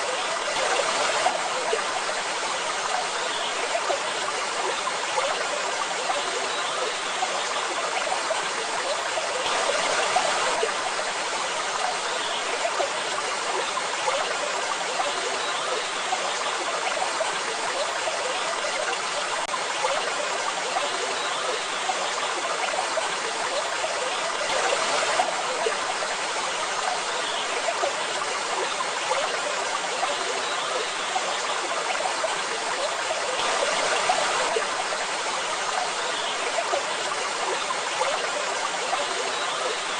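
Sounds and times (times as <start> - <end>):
rushing falling water: 0.0 - 39.9.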